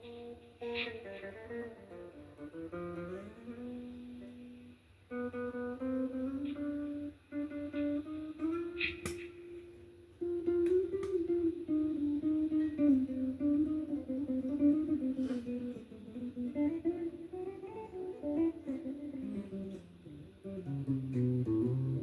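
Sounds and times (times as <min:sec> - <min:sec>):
solo guitar playing: 0:00.0 - 0:22.0
sharp click: 0:08.8 - 0:09.4.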